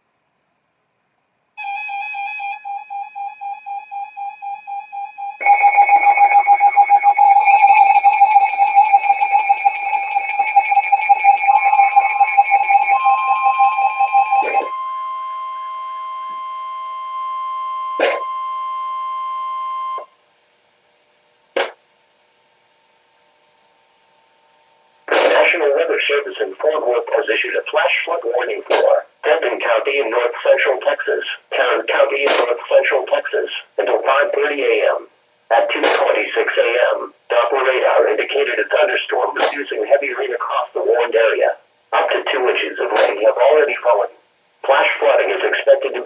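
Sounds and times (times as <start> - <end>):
steady two-pitch alert tone: 1.6 - 20.1
rapid electronic beeps: 3.1 - 15.8
harsh attention tone: 5.0 - 16.0, 18.0 - 18.4, 25.1 - 46.0.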